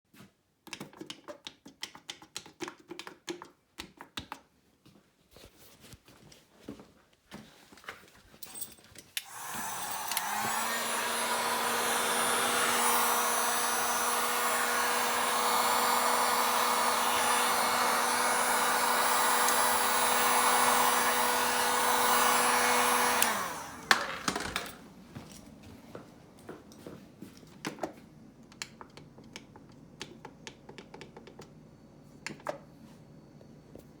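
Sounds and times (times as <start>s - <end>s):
small clicks and taps: 0.6s - 4.5s, 27.6s - 31.6s
heat gun blowing: 9.2s - 24.1s.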